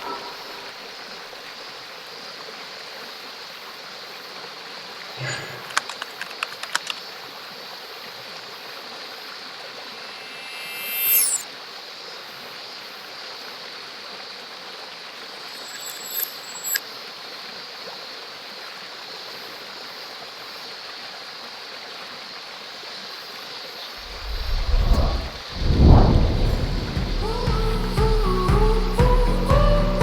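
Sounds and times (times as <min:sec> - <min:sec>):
mountain stream and waterfall rushing: 0:24.0 - 0:30.0
loud deep rumble: 0:24.1 - 0:28.3.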